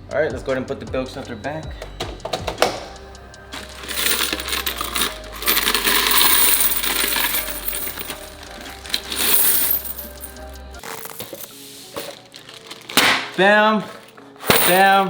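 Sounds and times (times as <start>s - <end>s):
coins clattering and jingling: 3.5s - 15.0s.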